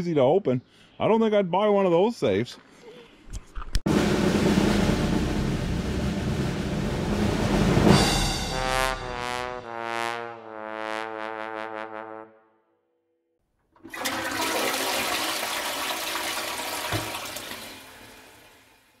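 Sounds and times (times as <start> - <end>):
brass music sting: 3.9 - 12.5
toilet flushing: 13.8 - 19.0.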